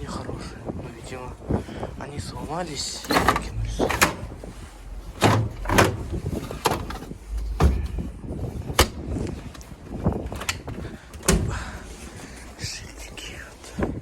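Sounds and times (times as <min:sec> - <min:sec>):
sharp knocks and thuds: 0:05.0 - 0:09.2.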